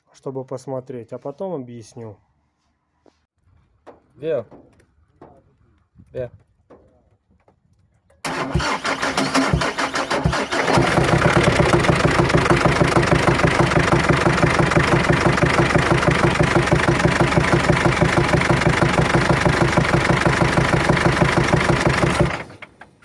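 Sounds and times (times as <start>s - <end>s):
diesel engine idling with knock: 8.3s - 23.0s.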